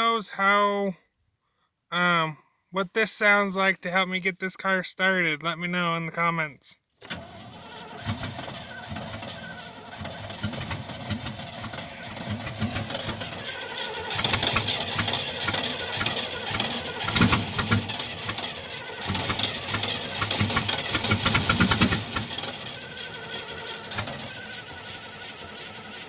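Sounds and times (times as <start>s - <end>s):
car engine cranking not starting: 7.0s - 26.0s.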